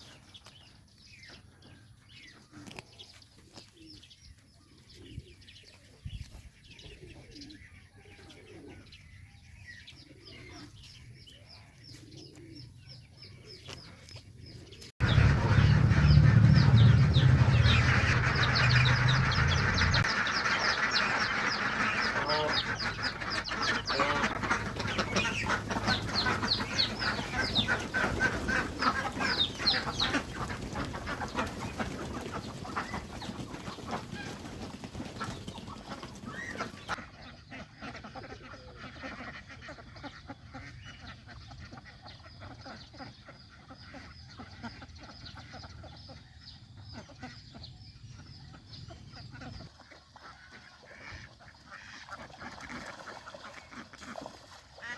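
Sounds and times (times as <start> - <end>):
goslings peeping: 15.0 - 54.9.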